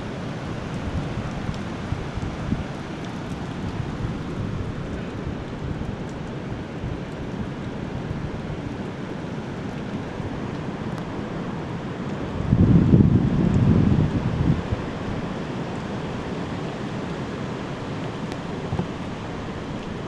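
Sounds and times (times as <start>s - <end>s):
strong wind on microphone: 12.4s - 15.3s.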